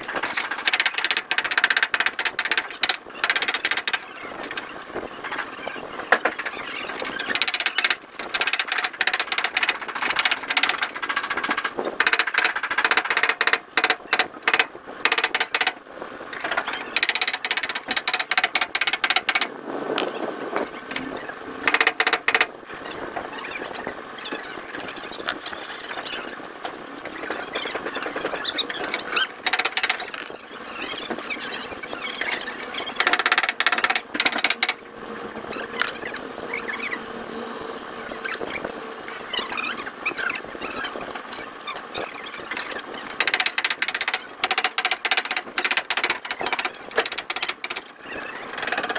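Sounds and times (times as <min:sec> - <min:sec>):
busy workshop background: 0:00.0 - 0:48.9
rapid tapping on car bodywork: 0:00.2 - 0:04.7, 0:16.4 - 0:19.5, 0:20.9 - 0:22.6.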